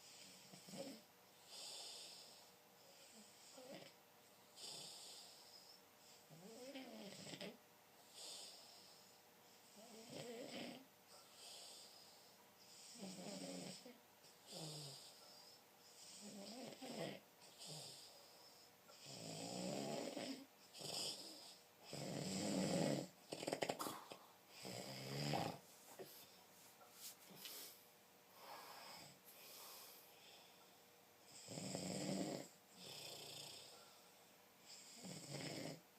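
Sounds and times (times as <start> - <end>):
person snoring: 9.7 - 10.9, 12.8 - 15.2, 19.0 - 25.6, 31.3 - 33.7, 34.7 - 35.8.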